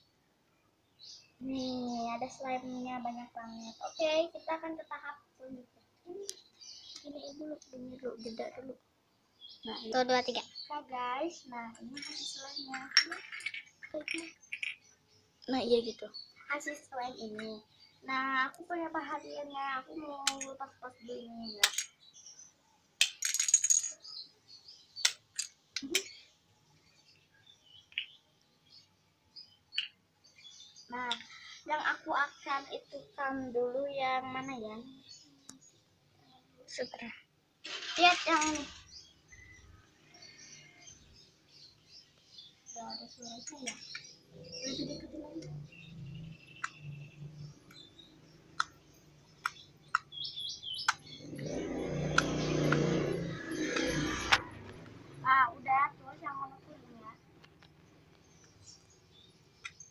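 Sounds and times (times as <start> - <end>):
sharp plastic clicks: 20.2 - 20.5.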